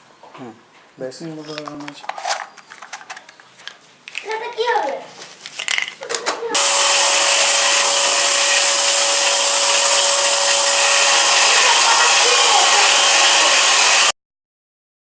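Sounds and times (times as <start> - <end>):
vacuum cleaner running: 6.5 - 14.2.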